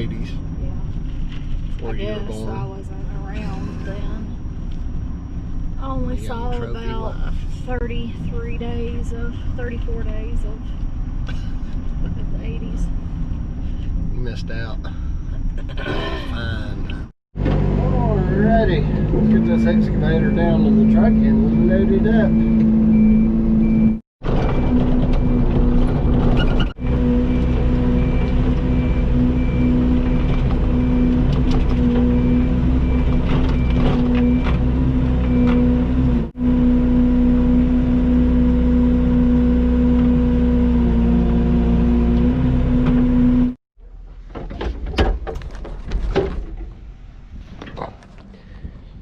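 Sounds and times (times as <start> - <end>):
diesel engine running: 0.0 - 43.6
travel alarm beeping: 19.4 - 25.5, 31.8 - 34.6.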